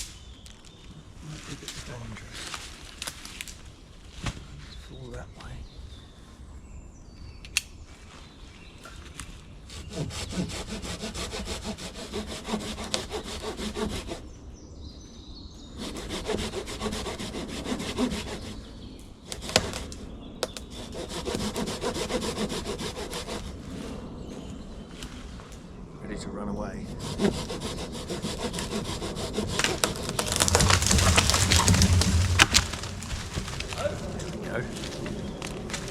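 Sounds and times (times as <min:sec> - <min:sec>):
hand saw cutting branch: 0:09.8 - 0:14.2, 0:15.8 - 0:18.6, 0:19.3 - 0:23.6, 0:26.9 - 0:34.4.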